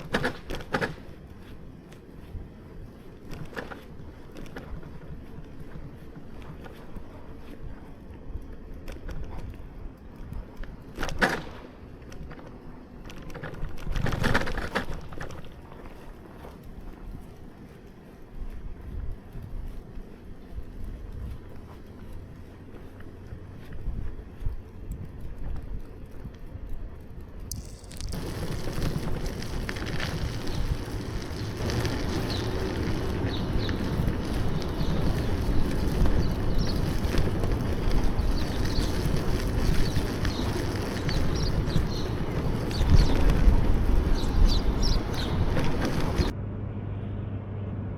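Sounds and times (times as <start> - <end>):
bicycle rumbling over snow: 0.0 - 46.4
wind on microphone: 23.6 - 46.3.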